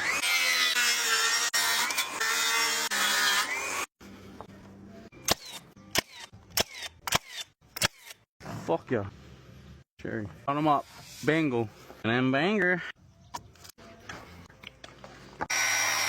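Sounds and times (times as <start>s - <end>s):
power tool running: 15.5s - 16.0s.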